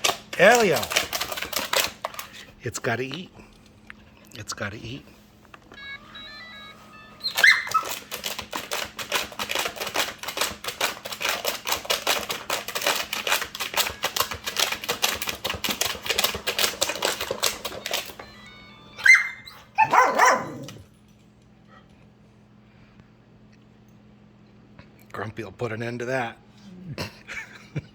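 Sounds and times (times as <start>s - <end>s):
rapid clicking and rattling: 0.0s - 2.4s, 7.4s - 18.2s
faint motor hum: 0.0s - 27.9s
puppy barking: 7.3s - 8.0s, 19.0s - 20.8s.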